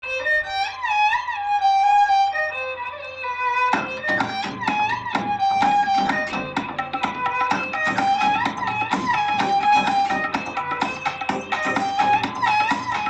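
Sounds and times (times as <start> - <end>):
sustained melody line: 1.4 - 13.0
plucked accompaniment: 3.5 - 13.0.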